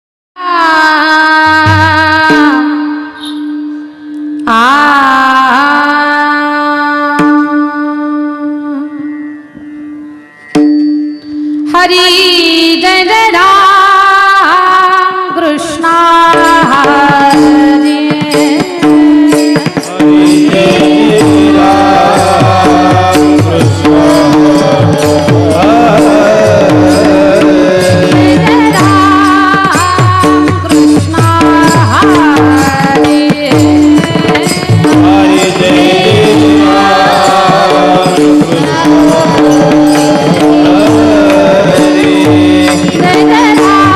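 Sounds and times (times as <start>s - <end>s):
woman singing devotional song: 0.4s - 9.2s, 11.6s - 43.9s
drum beats: 1.5s - 3.3s, 15.8s - 43.9s.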